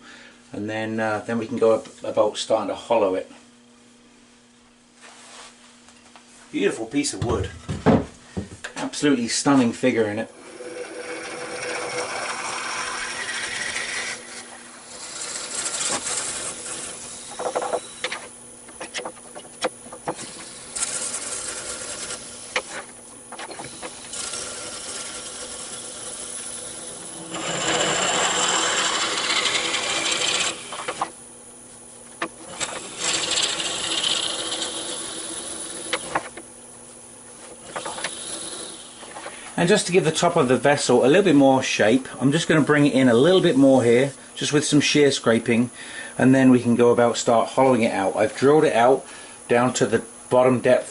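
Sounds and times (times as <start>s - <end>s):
lathe motor hum: 9.6s - 41.5s
drill bit boring into wood: 10.4s - 18.3s, 19.7s - 31.2s, 32.4s - 36.4s, 37.6s - 39.3s.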